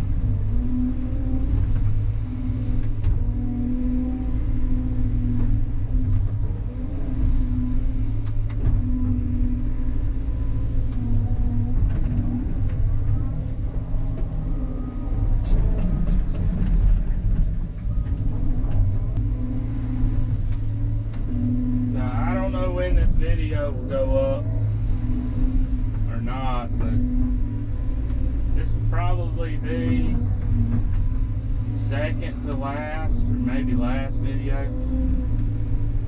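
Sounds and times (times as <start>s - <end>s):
excavator diesel engine running: 0.0s - 36.0s.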